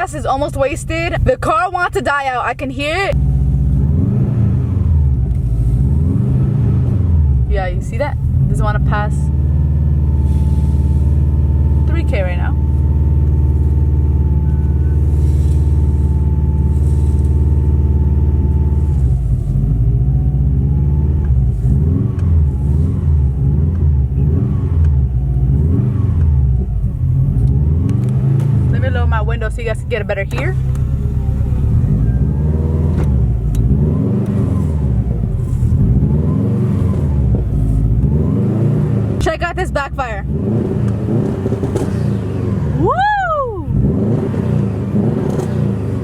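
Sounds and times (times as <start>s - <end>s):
car engine revving steadily: 0.0s - 46.0s
engine pops: 29.4s - 32.2s.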